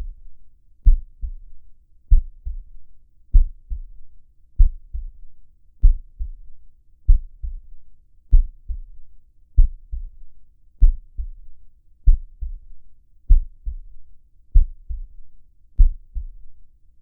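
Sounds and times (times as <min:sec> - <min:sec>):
slow heartbeat: 0:00.0 - 0:16.6.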